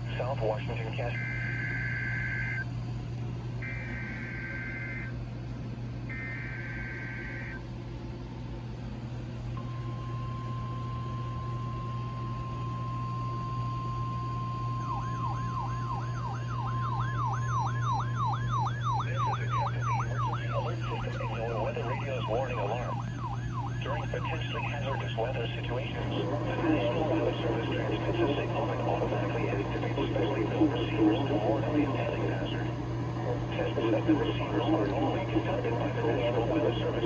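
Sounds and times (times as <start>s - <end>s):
constant low hum: 0.0s - 37.0s
steady warning alarm tone: 0.0s - 37.0s
alert siren sweeping up and down: 1.0s - 2.7s, 3.6s - 5.2s, 6.1s - 7.6s, 10.2s - 32.6s
buzzy digital data bursts: 6.1s - 7.6s.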